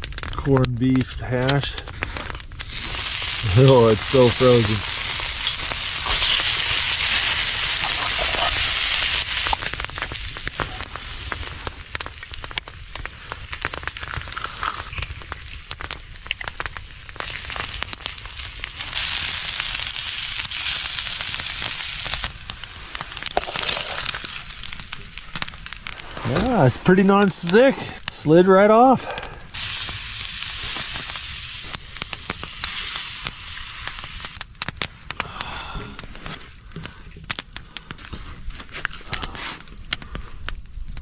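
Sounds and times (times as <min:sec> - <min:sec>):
food sizzling in skillet: 0:02.6 - 0:27.6, 0:29.5 - 0:34.4.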